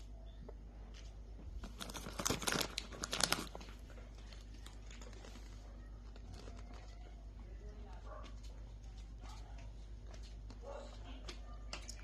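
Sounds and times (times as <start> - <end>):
packaging crinkling: 1.6 - 7.3.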